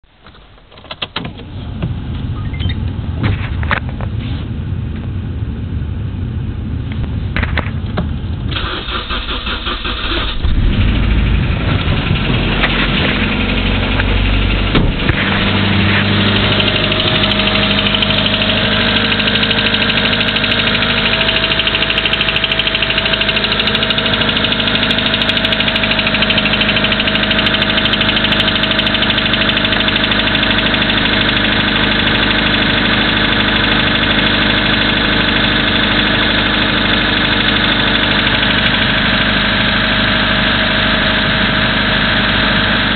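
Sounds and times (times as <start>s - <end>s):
car engine idling with knock: 0.1s - 4.2s, 6.9s - 8.5s, 10.3s - 42.9s
car engine starter cranking: 0.2s - 1.6s, 8.5s - 11.0s, 11.6s - 39.0s.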